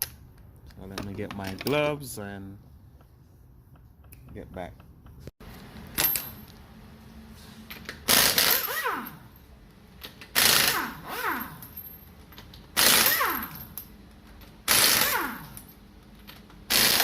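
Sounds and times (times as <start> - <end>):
impact wrench rattling: 7.8 - 9.3, 9.9 - 15.7, 16.3 - 17.0.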